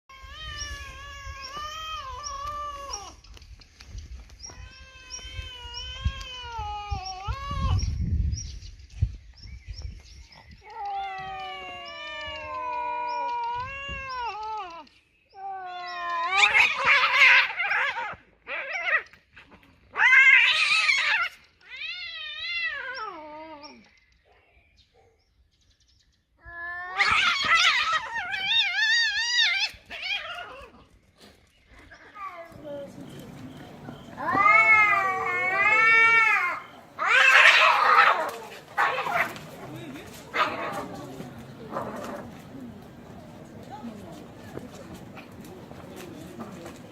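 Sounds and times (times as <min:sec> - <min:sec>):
cats yowling: 0:00.1 - 0:03.2, 0:04.5 - 0:07.9, 0:10.7 - 0:19.1, 0:19.9 - 0:23.8, 0:26.5 - 0:30.8, 0:32.0 - 0:45.8
cat screeching: 0:15.6 - 0:18.7, 0:26.5 - 0:30.7, 0:34.1 - 0:39.7.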